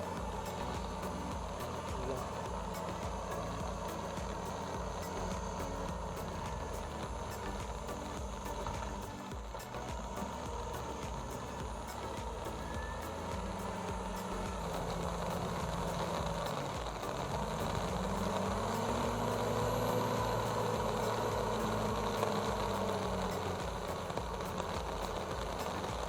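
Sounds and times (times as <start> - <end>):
bulldozer diesel engine running: 0.0 - 26.0.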